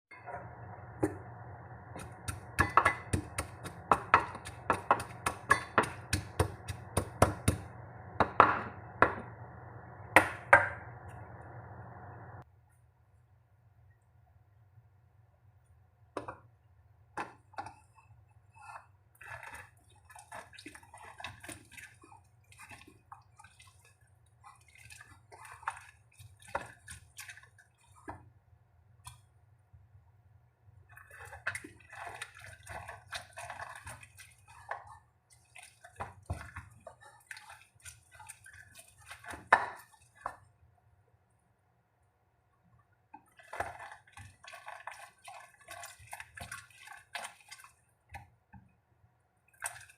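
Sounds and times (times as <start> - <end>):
water dripping and sloshing: 17.4 - 28.4, 30.8 - 40.7, 42.5 - 48.7, 49.4 - 49.9.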